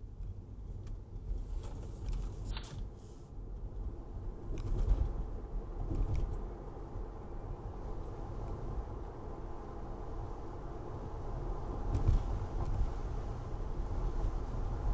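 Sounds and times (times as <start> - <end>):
car engine and road noise: 0.0 - 14.9.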